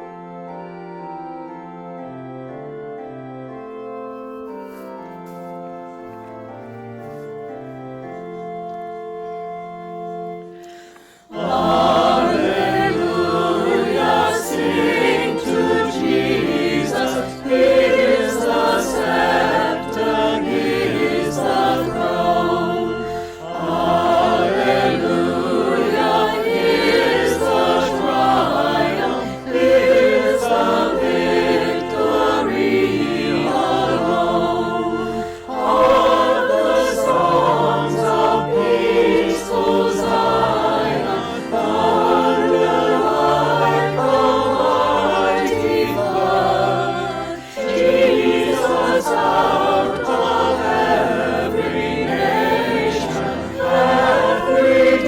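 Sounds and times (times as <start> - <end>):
choir singing an anthem: 11.2 - 55.0.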